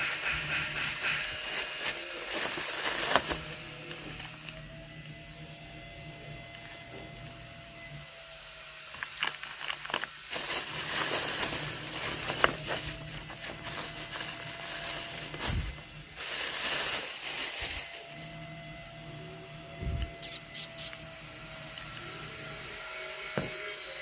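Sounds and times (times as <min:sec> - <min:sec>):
food wrapping crinkling: 0:01.0 - 0:03.7, 0:08.8 - 0:18.5.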